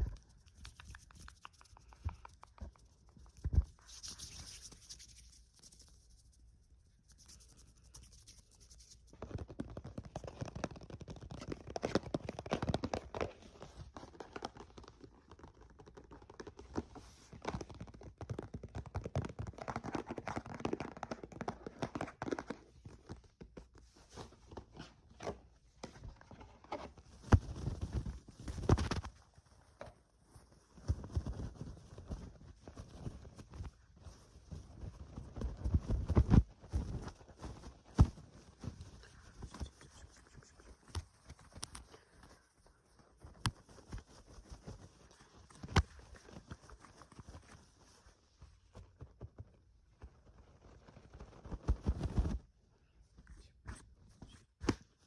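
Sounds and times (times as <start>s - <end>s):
scratching and rustling: 0.0s - 55.0s.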